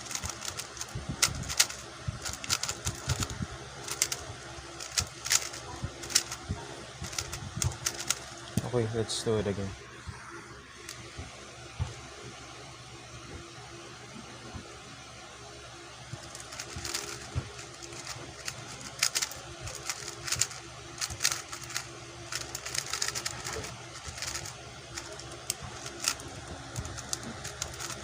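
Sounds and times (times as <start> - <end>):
puzzle cube clicking: 0.0 - 4.2, 4.8 - 6.4, 7.0 - 8.2, 16.3 - 28.0.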